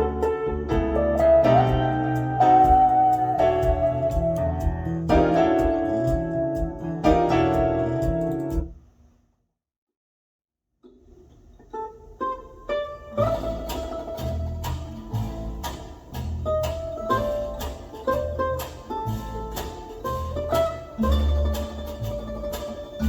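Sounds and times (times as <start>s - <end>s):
full band playing: 0.0s - 8.6s, 13.3s - 23.0s
plucked guitar notes: 0.0s - 8.7s, 12.2s - 23.0s
recorded song: 0.0s - 8.8s.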